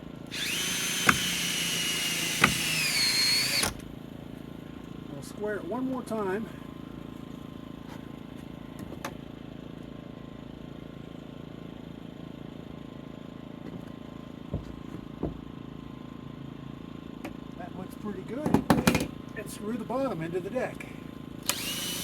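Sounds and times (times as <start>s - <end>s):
dull thumps on wooden post: 14.5s - 15.5s.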